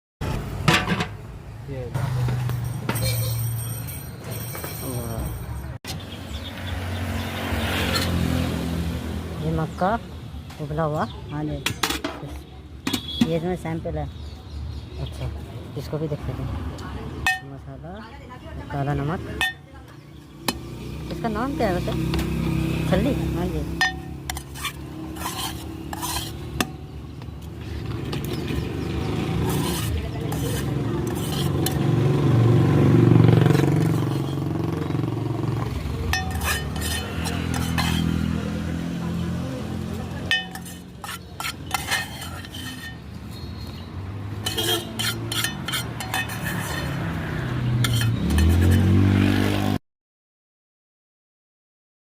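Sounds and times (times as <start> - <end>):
spoon clinking in a bowl: 17.3 - 17.5, 36.1 - 38.1, 40.3 - 43.1, 44.4 - 46.9.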